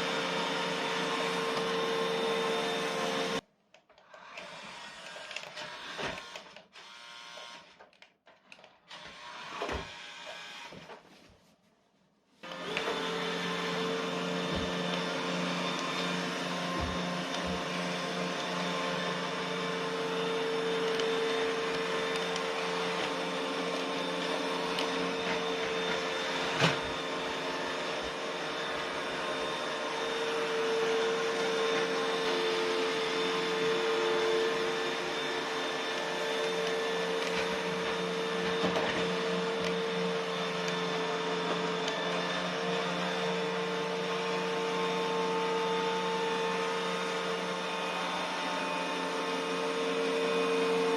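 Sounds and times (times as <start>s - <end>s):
robot vacuum motor hum: 12.4s - 50.9s.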